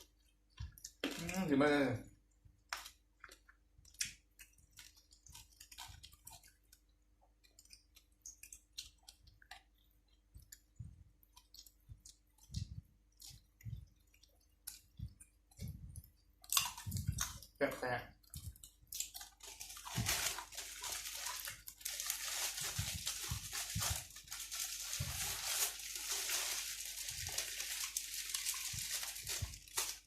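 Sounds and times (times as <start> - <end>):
person chewing: 0.0 - 1.5, 2.3 - 17.6, 18.2 - 30.0.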